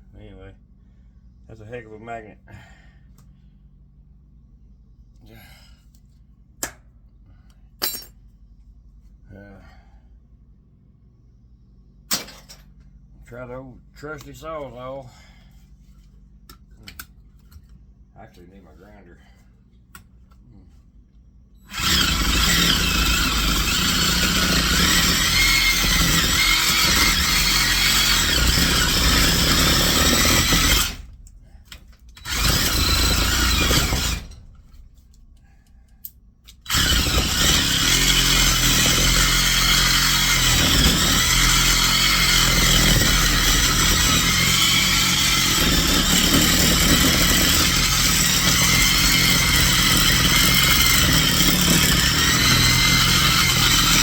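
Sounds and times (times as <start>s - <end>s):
power tool cutting metal: 21.7s - 31.1s, 32.2s - 34.8s, 36.6s - 54.0s.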